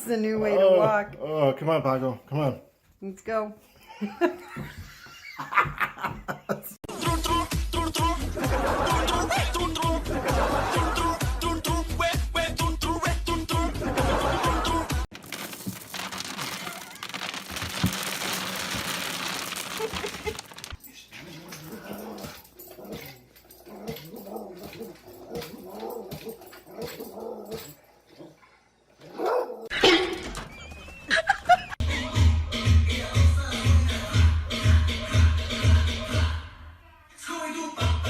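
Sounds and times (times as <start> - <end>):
noise: 15.2 - 20.8.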